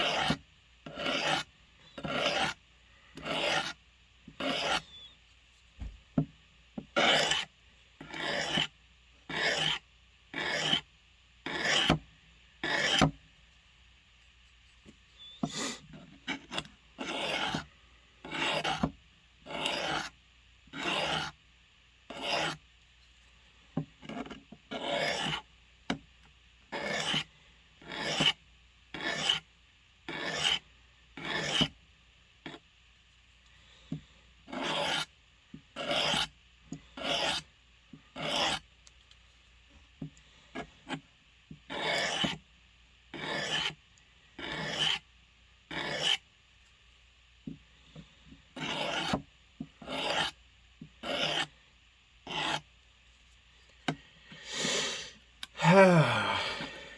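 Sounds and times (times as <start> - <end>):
blade scraping on sharpening stone: 0.0 - 2.6, 3.2 - 3.8, 4.4 - 5.0, 7.0 - 7.5, 8.1 - 8.7, 9.3 - 9.8, 10.4 - 10.8, 11.5 - 11.9, 17.0 - 17.6, 18.3 - 18.8, 19.5 - 20.1, 22.1 - 22.6, 24.7 - 25.4, 26.7 - 27.2, 29.0 - 29.4, 30.1 - 30.6, 34.5 - 35.0, 35.8 - 36.3, 38.2 - 38.6, 41.7 - 42.3, 43.2 - 43.7, 44.4 - 45.0, 45.7 - 46.2, 48.6 - 49.2, 49.9 - 50.3, 51.0 - 51.5.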